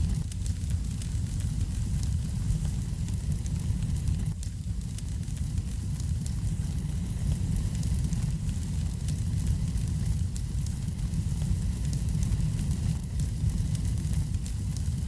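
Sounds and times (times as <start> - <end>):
fire crackling and popping: 0.0 - 15.0
fire flames rumbling: 0.0 - 15.0.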